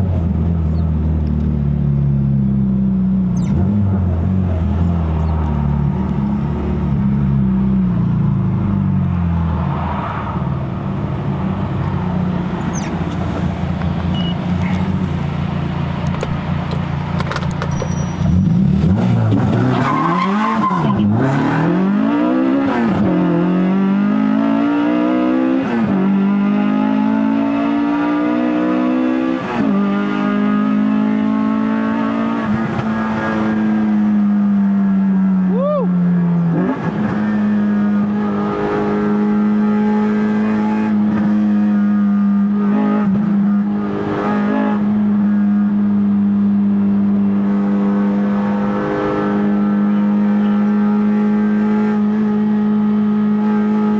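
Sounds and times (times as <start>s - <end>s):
car engine revving: 3.0s - 34.5s
car accelerating through gears: 18.3s - 34.6s, 36.3s - 53.9s.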